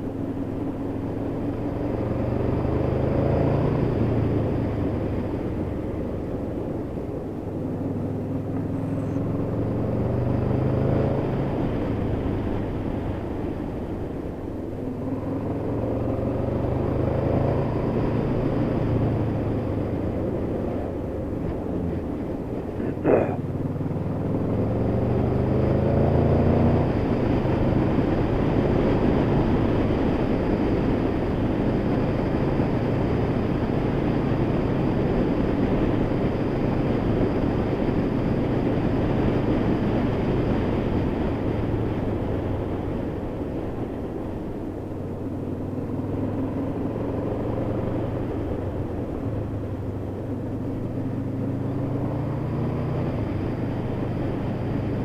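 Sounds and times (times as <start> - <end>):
wind and road noise: 0.0 - 55.0
motorcycle engine revving: 14.8 - 37.6.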